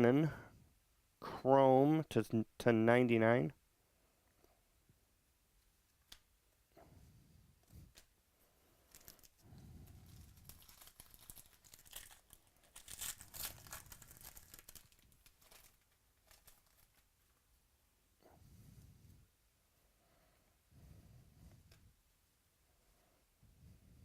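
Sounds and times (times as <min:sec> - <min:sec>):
cards and packaging rustling: 0:08.8 - 0:17.4.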